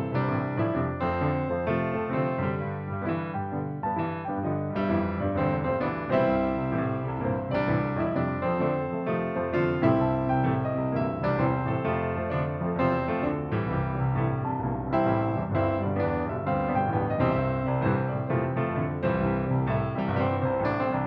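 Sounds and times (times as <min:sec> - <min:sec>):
piano music: 0:00.0 - 0:21.0.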